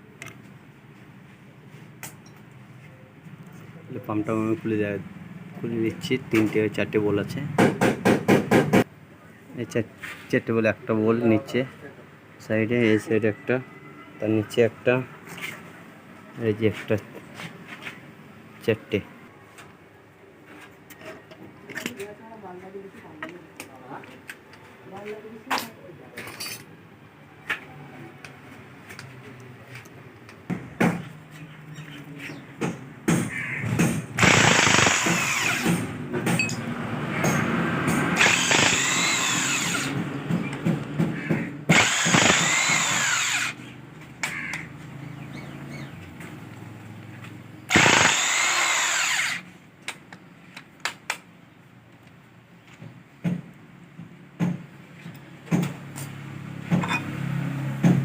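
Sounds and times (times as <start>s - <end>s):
metallic clinks of tools: 26.2s - 26.7s, 36.3s - 37.4s
handheld power tool running: 34.2s - 35.9s, 38.2s - 40.0s, 41.7s - 43.6s, 47.7s - 49.4s.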